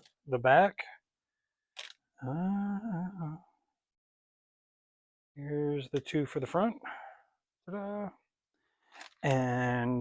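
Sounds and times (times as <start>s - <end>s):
man humming a drawn-out note: 2.2s - 3.5s.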